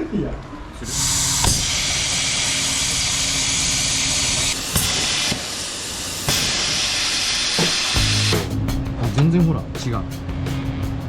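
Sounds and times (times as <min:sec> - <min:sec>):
plasma cutter hissing: 0:00.8 - 0:08.5.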